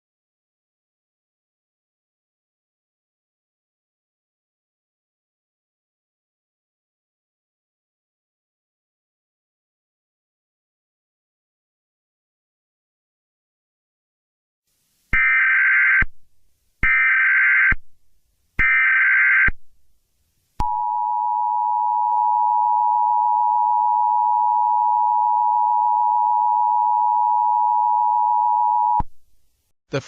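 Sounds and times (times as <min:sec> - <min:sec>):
data tone bursts: 0:20.6 - 0:29.0.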